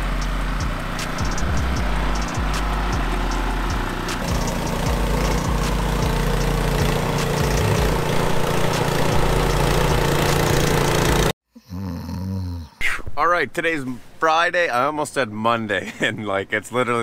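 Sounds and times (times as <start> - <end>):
skid steer engine running: 0.0 - 11.3.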